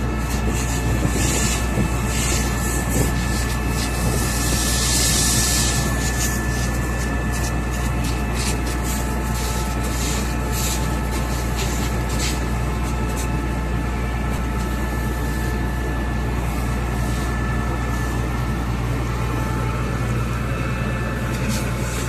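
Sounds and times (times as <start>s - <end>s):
pump engine drone: 0.0s - 22.0s
steady whine tones: 0.0s - 22.0s.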